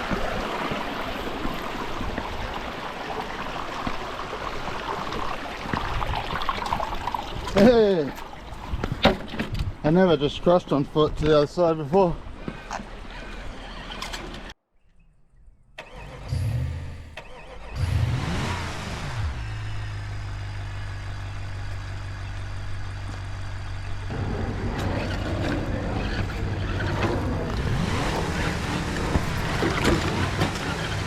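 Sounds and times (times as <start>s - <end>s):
engine starting and revving: 15.8s - 20.4s, 24.1s - 31.0s.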